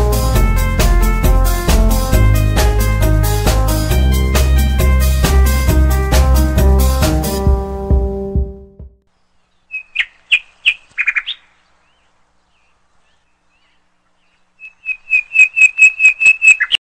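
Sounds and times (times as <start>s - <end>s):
background music: 0.0s - 9.0s
bird chirping: 9.1s - 16.8s.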